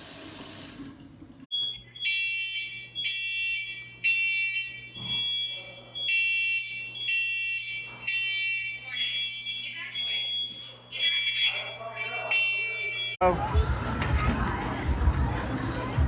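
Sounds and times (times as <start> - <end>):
electronic alarm beeping: 1.5 - 13.3.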